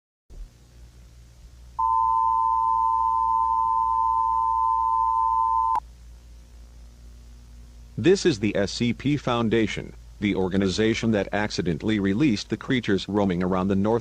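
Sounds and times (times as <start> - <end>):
faint hum: 0.3 - 14.0
steady beep-like alert tone: 1.8 - 5.8.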